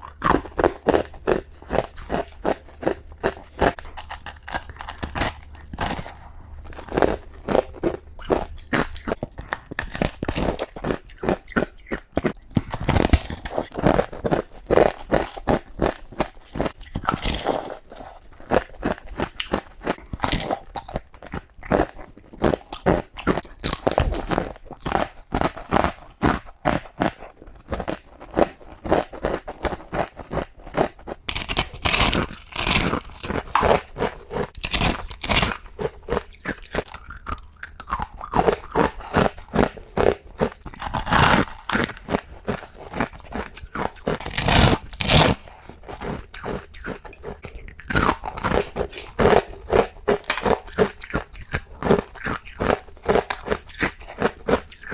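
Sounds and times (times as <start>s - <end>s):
ice being chewed: 0.0s - 54.9s.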